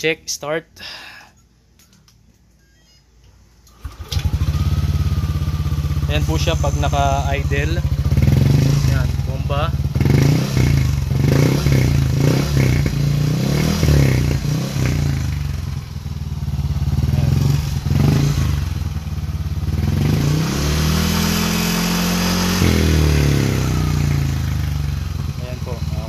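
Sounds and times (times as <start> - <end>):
scooter engine revving: 3.7 - 26.0.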